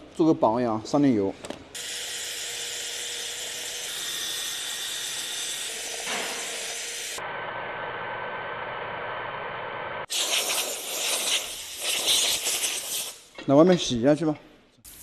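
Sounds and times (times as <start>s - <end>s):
aerosol cleaner spray hiss: 10.1s - 13.2s.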